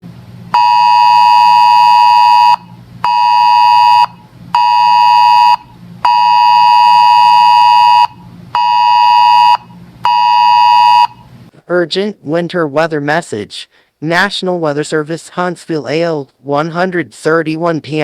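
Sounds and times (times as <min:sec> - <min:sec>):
weather radio alarm tone: 0:00.6 - 0:11.2.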